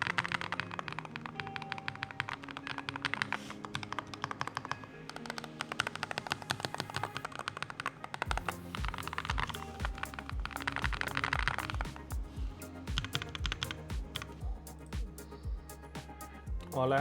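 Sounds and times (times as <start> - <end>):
background music: 0.0 - 17.0
deep kick-drum beat: 8.3 - 15.9, 16.5 - 17.0.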